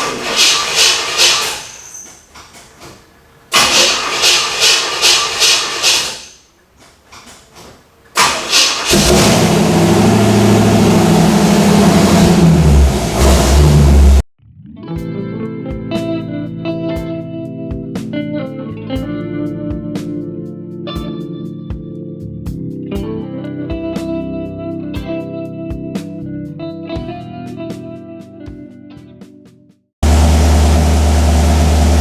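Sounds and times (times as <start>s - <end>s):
car starter cranking: 3.5s - 6.4s, 7.0s - 14.2s
car engine running loud: 8.3s - 14.2s, 30.0s - 32.0s
guitar music: 14.4s - 29.4s.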